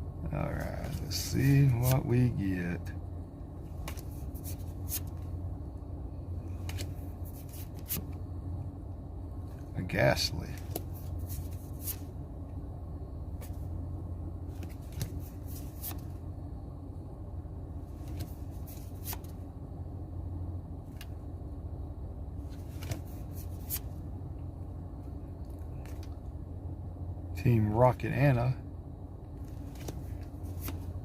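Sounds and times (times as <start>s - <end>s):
steady low hum: 0.0s - 31.0s
cards being flipped through: 0.8s - 2.0s, 3.7s - 5.3s, 6.5s - 8.2s, 10.6s - 12.1s, 14.5s - 16.2s, 17.9s - 19.4s, 22.5s - 24.0s, 25.8s - 26.2s, 29.4s - 30.9s.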